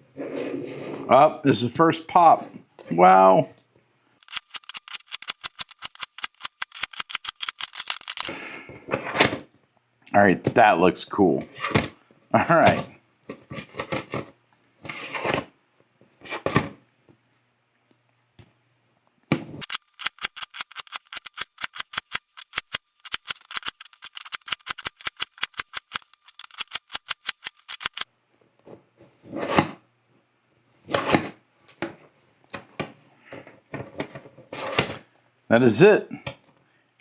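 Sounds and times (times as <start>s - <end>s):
puzzle cube clacking: 4.2s - 8.3s, 19.6s - 28.0s.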